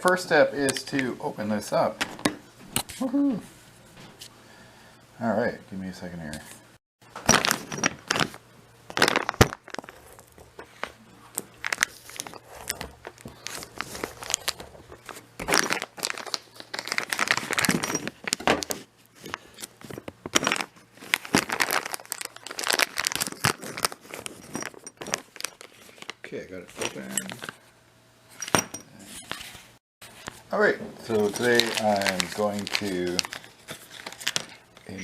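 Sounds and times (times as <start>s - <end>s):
packaging being torn and crumpled: 7.3s - 10.4s, 11.6s - 19.4s, 20.3s - 27.1s, 31.1s - 34.7s.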